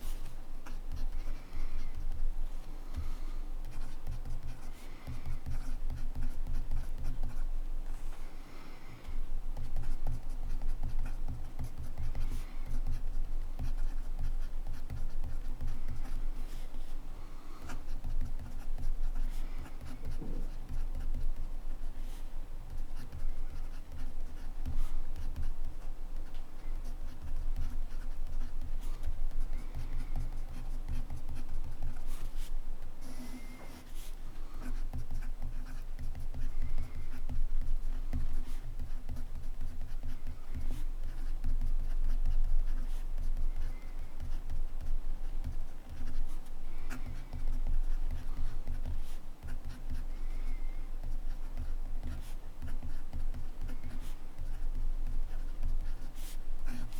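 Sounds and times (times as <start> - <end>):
pen nib scratching paper: 9.6 - 16.7, 22.7 - 56.9.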